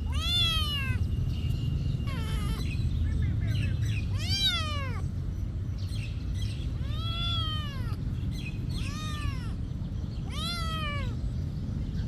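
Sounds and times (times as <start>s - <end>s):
cat meowing: 0.0s - 1.1s, 2.0s - 2.8s, 4.1s - 5.1s, 6.8s - 8.0s, 8.7s - 9.6s, 10.2s - 11.2s.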